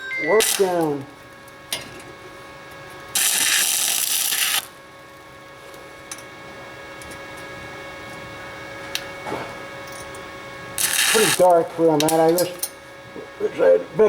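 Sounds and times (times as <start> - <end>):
welder arc crackling: 0.0 - 1.8, 2.9 - 5.8, 10.8 - 12.5.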